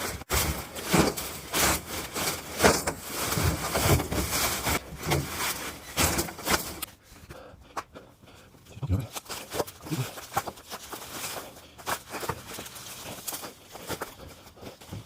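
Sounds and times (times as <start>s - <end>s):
branches rustling and crunching: 0.0s - 6.9s, 9.1s - 15.0s.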